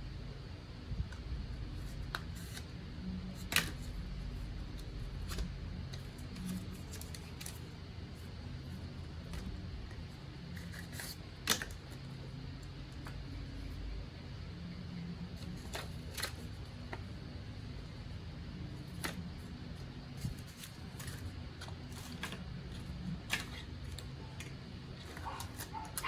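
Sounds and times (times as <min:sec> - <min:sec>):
steady low hum: 0:00.0 - 0:26.0
hands handling packaging: 0:04.8 - 0:09.6, 0:20.2 - 0:26.0.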